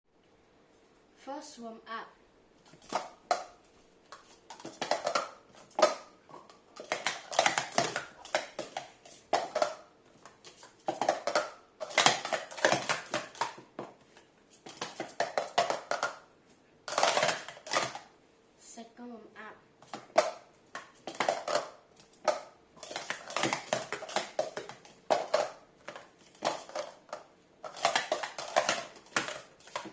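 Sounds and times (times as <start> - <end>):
plastic cups clattering: 2.6 - 18.2, 19.8 - 29.9.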